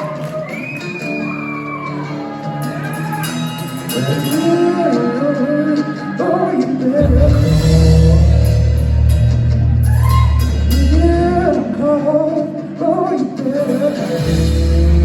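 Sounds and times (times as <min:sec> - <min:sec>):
rock band playing live: 0:00.0 - 0:15.0
heavy low bass: 0:07.0 - 0:11.9, 0:14.2 - 0:15.0.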